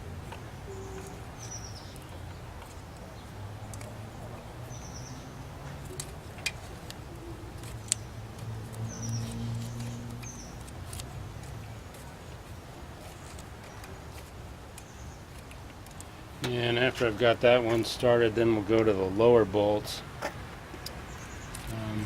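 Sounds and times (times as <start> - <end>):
small bird chirping: 0.6 - 6.1, 7.1 - 11.0.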